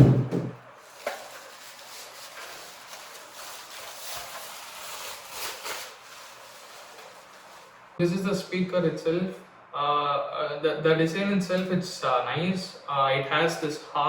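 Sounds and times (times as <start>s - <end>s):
heavy thump: 0.0s - 0.6s
packaging rustling and scraping: 0.8s - 7.8s.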